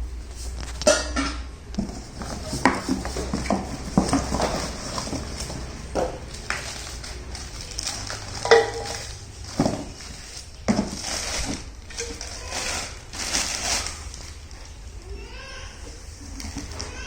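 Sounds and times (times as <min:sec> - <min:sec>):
metal pots and lids clinking: 0:00.8 - 0:01.5, 0:08.1 - 0:10.0.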